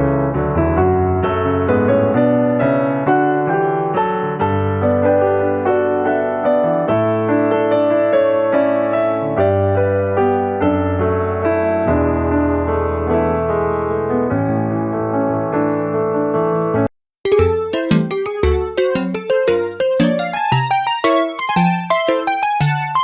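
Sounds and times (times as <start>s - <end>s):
piano tune: 0.0s - 23.0s.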